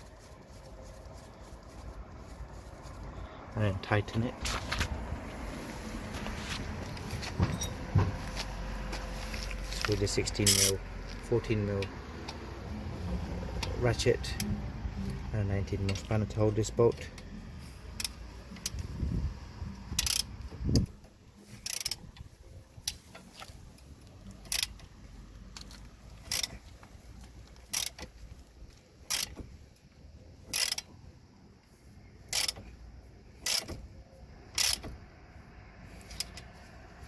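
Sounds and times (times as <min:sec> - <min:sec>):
low knocks: 0:07.2 - 0:08.4
socket ratchet clicking: 0:17.9 - 0:19.0, 0:19.8 - 0:21.0, 0:21.6 - 0:23.5, 0:24.2 - 0:26.7, 0:27.5 - 0:28.2, 0:29.0 - 0:29.5, 0:30.5 - 0:31.0, 0:32.3 - 0:32.7, 0:33.4 - 0:33.8, 0:34.5 - 0:35.0, 0:36.0 - 0:36.5.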